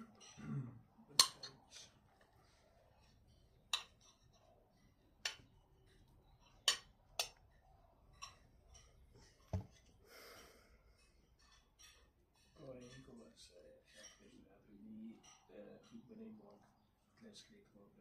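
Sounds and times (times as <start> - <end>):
cutlery tapping on a plate: 1.2 - 1.8, 3.7 - 4.4, 5.2 - 5.6, 6.3 - 9.8
soft breath: 9.9 - 11.2.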